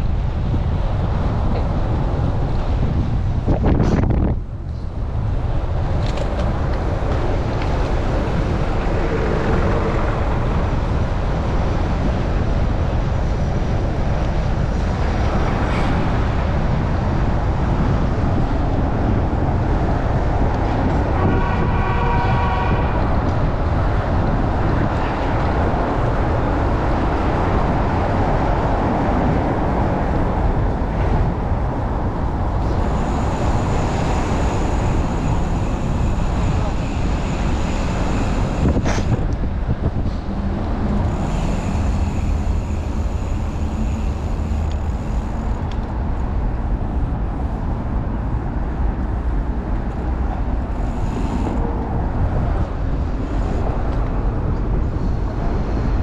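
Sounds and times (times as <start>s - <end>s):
street traffic: 0.0s - 56.0s
wind rumbling on microphone: 0.0s - 56.0s.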